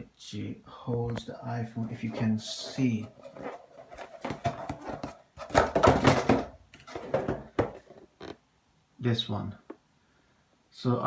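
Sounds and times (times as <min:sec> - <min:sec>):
rustling: 0:01.8 - 0:08.4.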